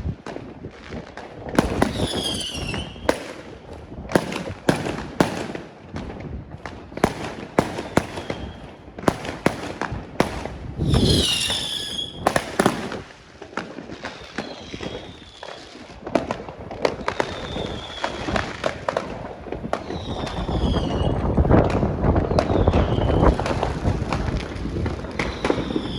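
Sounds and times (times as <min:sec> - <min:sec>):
fireworks bangs and crackles: 0:00.0 - 0:25.9
whistling firework shell: 0:01.6 - 0:03.3, 0:07.0 - 0:13.0, 0:14.2 - 0:15.7, 0:17.0 - 0:18.5, 0:19.8 - 0:21.3, 0:22.2 - 0:23.5, 0:25.2 - 0:25.9.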